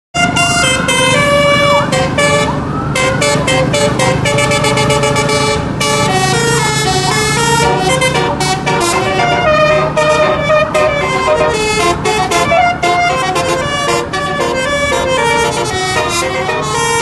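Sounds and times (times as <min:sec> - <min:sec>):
bus horn playing fast tune: 0:00.2 - 0:17.0.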